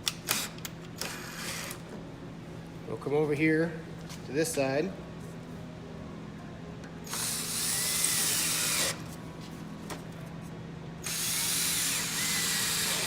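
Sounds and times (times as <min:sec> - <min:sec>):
power drill driving screws: 0:07.1 - 0:09.0, 0:11.0 - 0:13.0.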